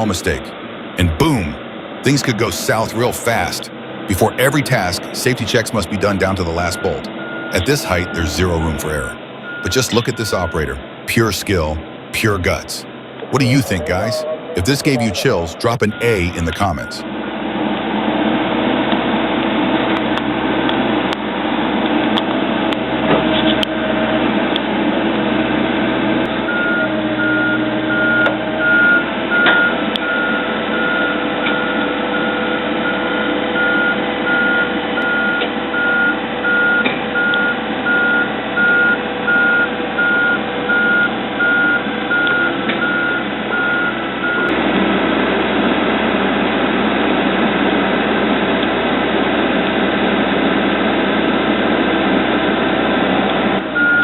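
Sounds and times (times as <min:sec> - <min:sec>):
backup alarm beeping: 0:00.0 - 0:17.1, 0:26.5 - 0:44.5, 0:53.8 - 0:54.0
diesel engine running: 0:00.0 - 0:54.0.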